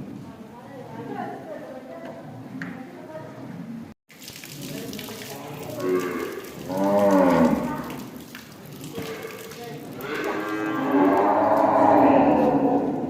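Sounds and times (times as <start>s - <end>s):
cow mooing: 5.7s - 8.0s, 8.9s - 13.0s.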